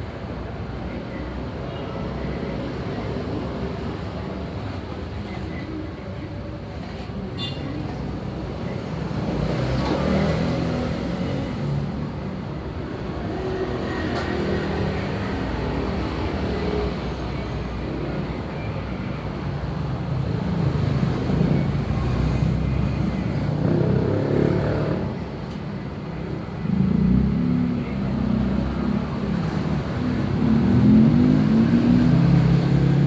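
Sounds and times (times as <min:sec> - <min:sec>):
road traffic rumble: 0:07.2 - 0:33.0.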